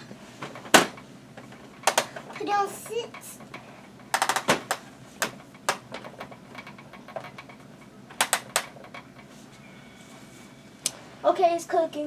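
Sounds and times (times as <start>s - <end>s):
plastic toy pieces clicking: 4.2s - 4.8s, 8.2s - 8.7s.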